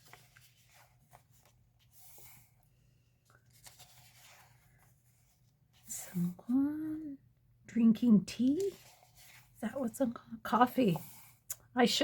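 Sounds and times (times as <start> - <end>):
paper pages rustling: 0.0 - 5.9, 8.3 - 10.0.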